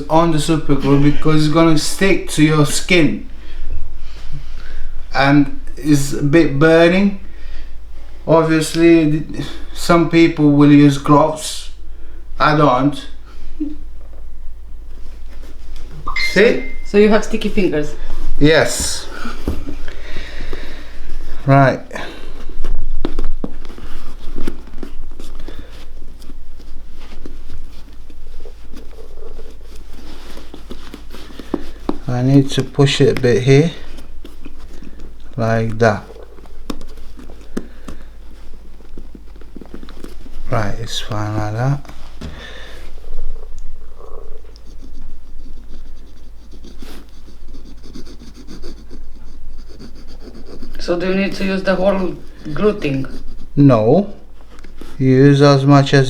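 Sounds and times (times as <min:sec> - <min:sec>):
hands handling a shoe: 0:18.2 - 0:21.4, 0:22.2 - 0:43.3.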